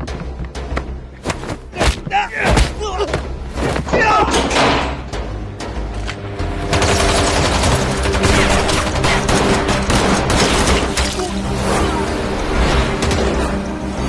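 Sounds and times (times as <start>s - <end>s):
dramatic background music: 0.0s - 14.0s.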